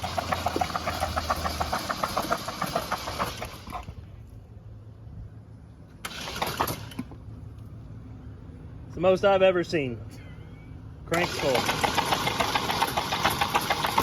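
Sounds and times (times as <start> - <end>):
engine cranking on starter: 0.0 - 4.0, 6.0 - 7.2, 11.1 - 14.0.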